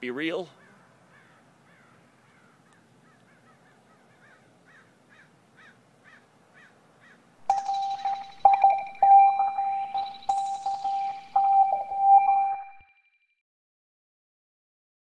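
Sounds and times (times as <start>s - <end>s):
bird calling: 0.4s - 12.8s
electronic music: 7.4s - 12.9s.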